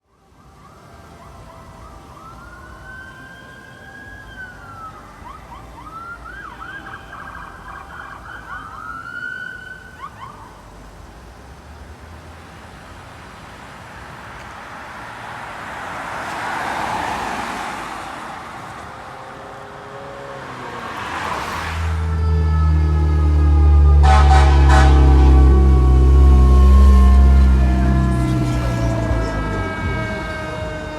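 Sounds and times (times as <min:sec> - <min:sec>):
fire siren wailing and yelping: 0:00.4 - 0:10.7, 0:18.6 - 0:30.9
vehicle passing by: 0:11.6 - 0:30.9.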